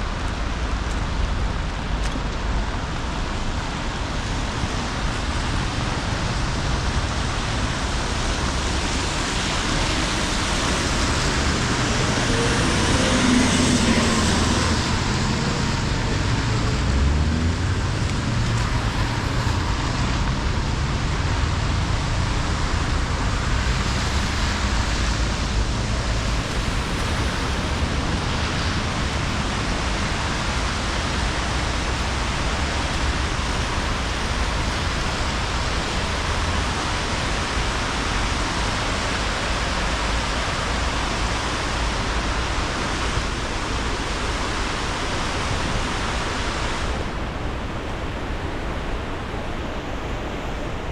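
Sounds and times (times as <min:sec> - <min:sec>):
steady traffic noise: 0:00.0 - 0:50.9
vehicle passing: 0:09.6 - 0:36.8.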